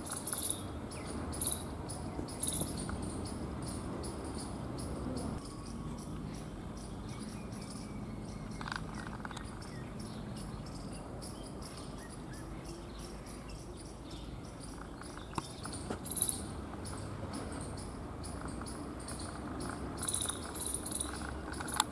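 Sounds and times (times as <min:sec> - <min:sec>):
insects chirping in pulses: 0:00.0 - 0:07.9, 0:13.6 - 0:21.8
low steady outdoor hum: 0:00.0 - 0:21.9.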